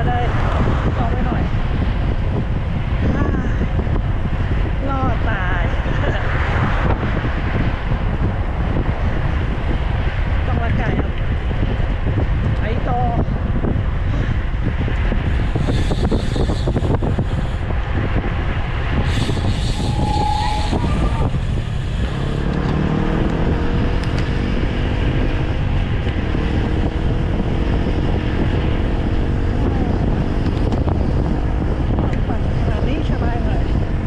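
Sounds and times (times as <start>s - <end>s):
wind buffeting microphone: 0.0s - 34.0s
vehicle engine rising in pitch: 15.2s - 33.0s.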